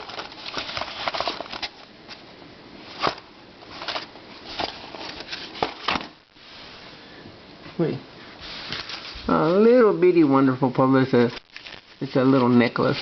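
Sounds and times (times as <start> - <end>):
boxes rustling: 0.0 - 2.2, 2.8 - 6.3, 8.4 - 10.2.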